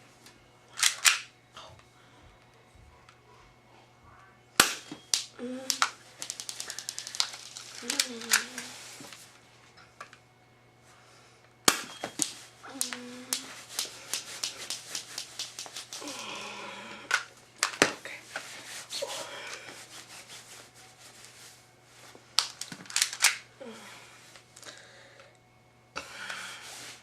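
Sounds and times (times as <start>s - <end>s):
airsoft gun clicks and clacks: 4.6s - 8.4s, 12.2s - 16.1s, 22.4s - 23.4s
sharp snaps: 4.6s - 8.6s, 11.7s - 16.3s.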